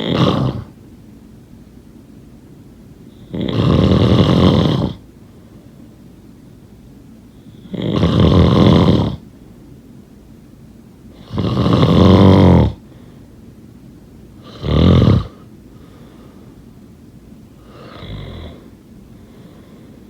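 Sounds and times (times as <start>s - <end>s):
person snoring: 0.0s - 0.7s, 3.3s - 5.0s, 7.7s - 9.2s, 11.2s - 12.8s, 14.4s - 15.4s, 17.6s - 18.7s.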